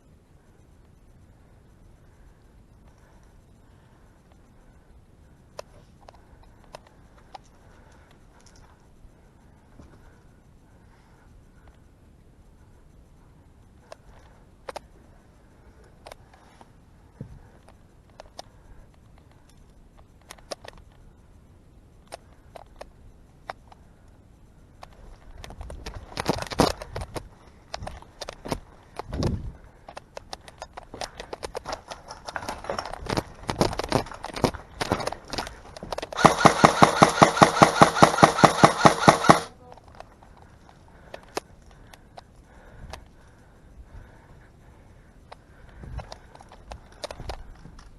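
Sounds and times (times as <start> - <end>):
sharp clicks: 13.8 - 15.0, 17.6 - 21.0, 24.8 - 43.2, 45.2 - 47.9
airsoft gun automatic burst: 36.0 - 39.6.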